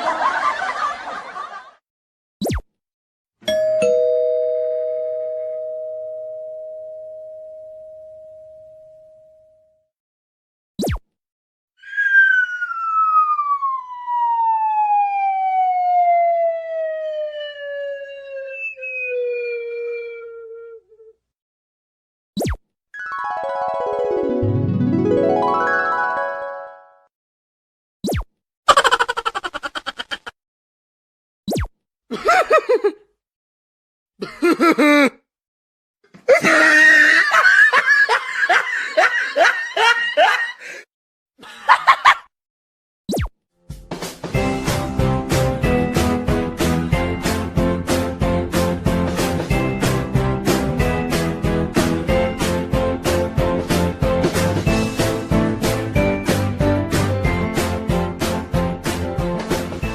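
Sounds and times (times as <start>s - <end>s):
laughter: 0.0s - 1.8s, 28.7s - 30.3s, 32.1s - 33.1s, 34.2s - 35.2s, 36.3s - 40.8s, 41.4s - 42.3s
falling whistle tone: 11.8s - 15.6s, 17.2s - 21.0s.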